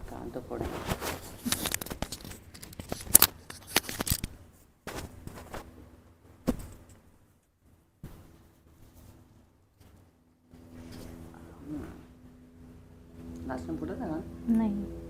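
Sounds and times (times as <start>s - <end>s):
rustle of hands and towel: 0.0s - 5.8s, 8.0s - 12.1s
neck joints cracking: 0.8s - 5.7s.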